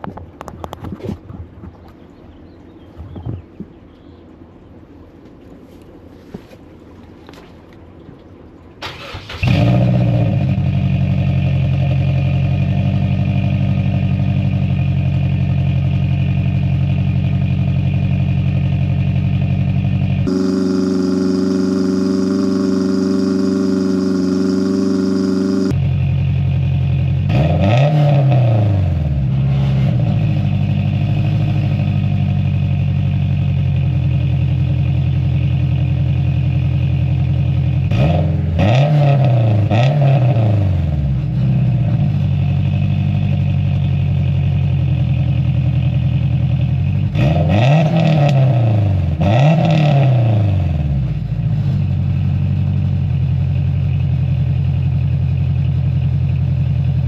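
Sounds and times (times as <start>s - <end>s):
car engine idling: 20.3s - 25.8s
engine revving: 20.3s - 25.8s.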